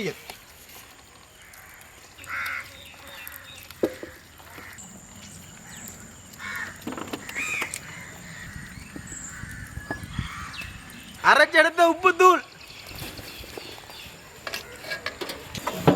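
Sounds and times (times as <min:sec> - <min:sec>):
crows cawing: 0:01.4 - 0:04.8, 0:05.6 - 0:11.0.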